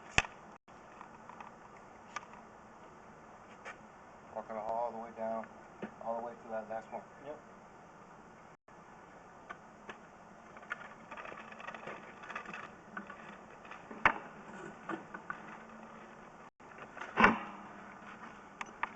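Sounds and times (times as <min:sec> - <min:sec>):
equipment clicking and rattling: 0:10.5 - 0:16.3.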